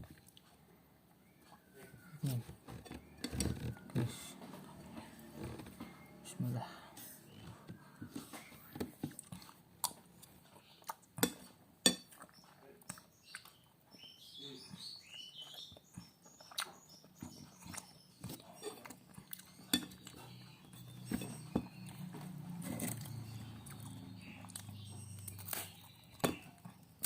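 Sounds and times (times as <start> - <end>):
eating and chewing: 0.0 - 0.7, 1.3 - 6.4, 7.0 - 27.0
cutlery clinking on plate: 11.2 - 12.1, 18.6 - 20.3.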